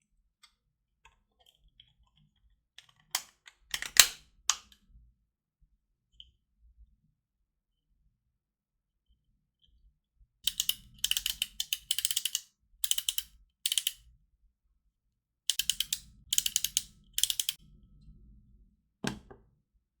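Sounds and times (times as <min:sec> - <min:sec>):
rapid plastic clicks: 0:15.5 - 0:17.6.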